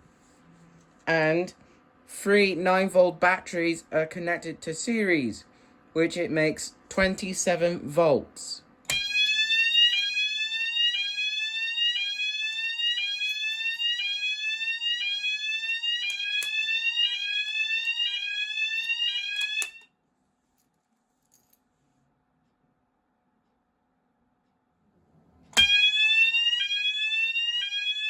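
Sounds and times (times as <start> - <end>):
fire alarm rising sweep tone: 8.9 - 19.9, 25.6 - 28.0.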